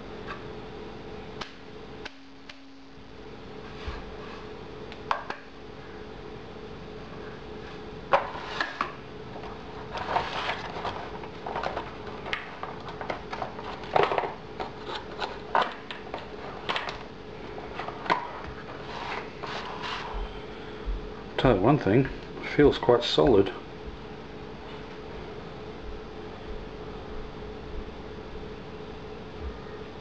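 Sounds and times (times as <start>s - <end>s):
knife and packaging handled: 9.9s - 17.0s.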